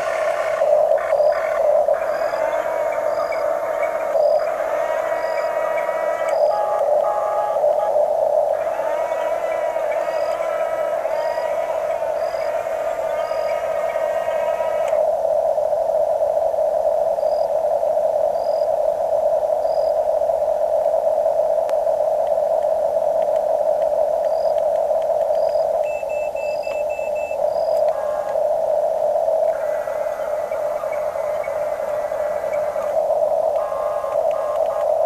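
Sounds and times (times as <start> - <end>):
toy electric motors whining: 0.0 - 7.9, 8.5 - 15.0, 29.5 - 35.0.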